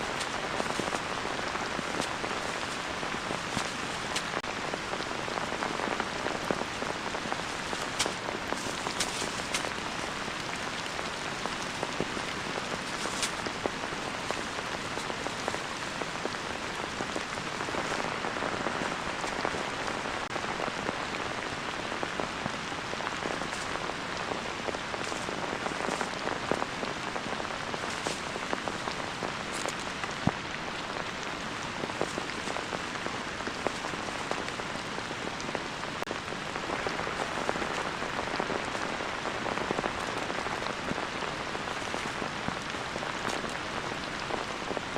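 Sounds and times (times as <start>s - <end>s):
heavy rain falling: 0.0s - 44.9s.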